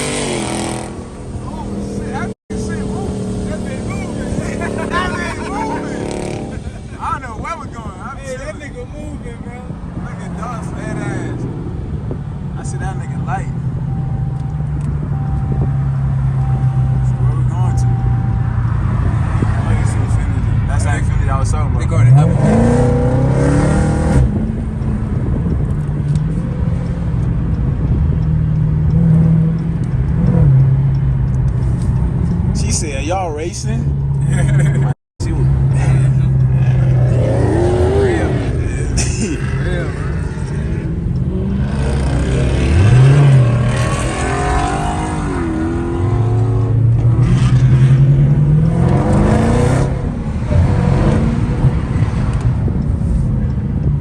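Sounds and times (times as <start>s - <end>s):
car engine droning: 0.0s - 54.0s.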